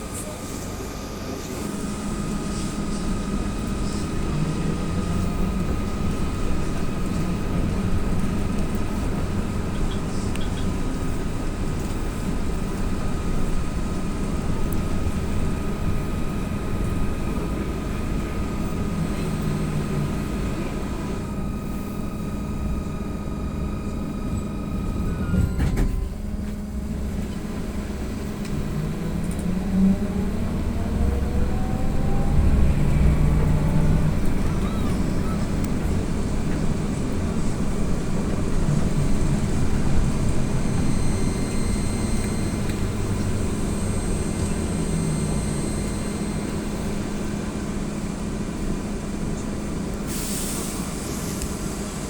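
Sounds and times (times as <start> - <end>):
trolleybus rumble: 0.0 - 52.0
high electric whine: 39.9 - 47.3.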